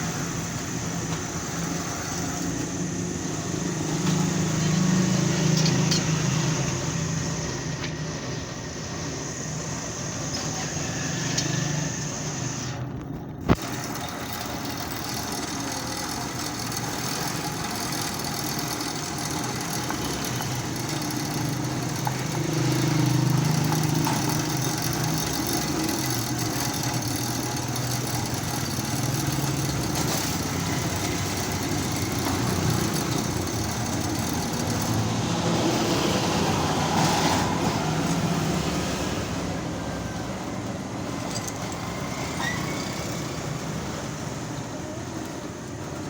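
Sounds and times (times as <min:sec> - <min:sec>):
vehicle engine running: 0:12.9 - 0:45.9.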